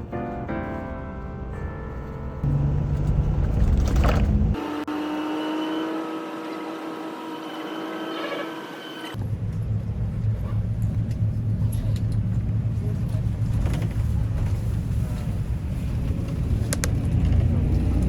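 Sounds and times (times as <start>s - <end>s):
road vehicle rumble: 0.0s - 4.9s, 9.1s - 18.0s.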